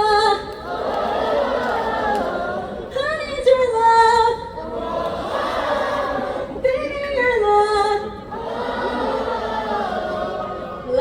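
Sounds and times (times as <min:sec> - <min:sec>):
woman singing into a microphone: 0:00.0 - 0:00.6, 0:02.8 - 0:04.6, 0:06.4 - 0:08.3, 0:10.8 - 0:11.0
crowd singing: 0:00.0 - 0:03.0, 0:04.2 - 0:07.1, 0:08.0 - 0:11.0.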